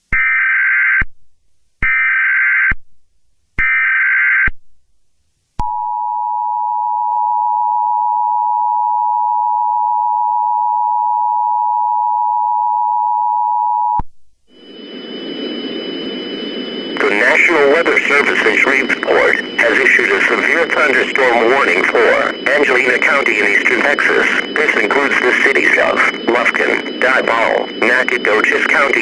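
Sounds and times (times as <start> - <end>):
two-tone attention signal: 16.8 - 29.0
warbling digital header bursts: 17.0 - 29.0.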